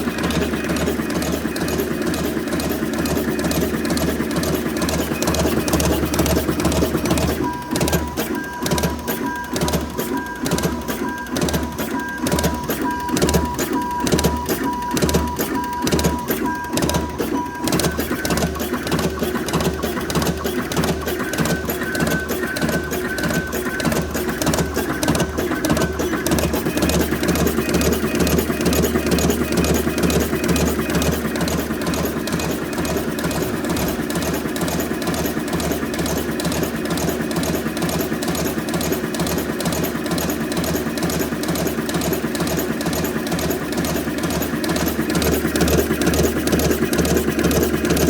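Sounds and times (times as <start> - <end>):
machine thumping and clattering: 0.0 - 48.0.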